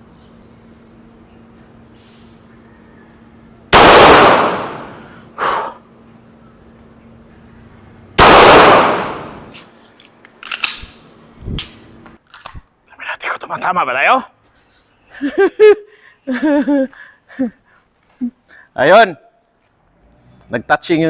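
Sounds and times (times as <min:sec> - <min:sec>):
pistol shots: 0:03.7 - 0:05.0, 0:08.2 - 0:09.5.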